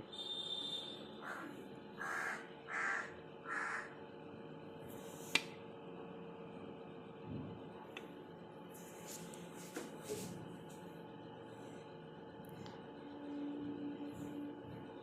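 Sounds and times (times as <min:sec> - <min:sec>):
crow cawing: 0:01.2 - 0:04.0.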